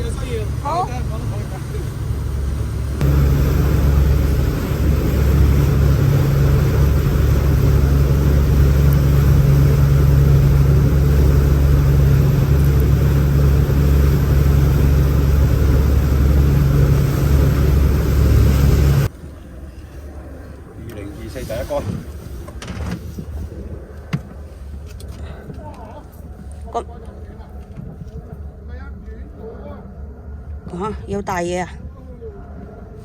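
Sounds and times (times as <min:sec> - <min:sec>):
boat engine running: 0:00.0 - 0:19.1.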